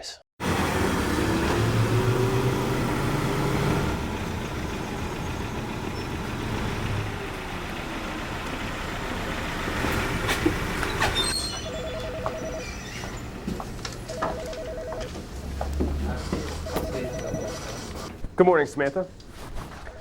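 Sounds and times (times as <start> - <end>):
vehicle engine rumbling: 0.4 - 18.4
telephone ringing: 11.6 - 12.8, 14.1 - 15.2, 16.6 - 18.1.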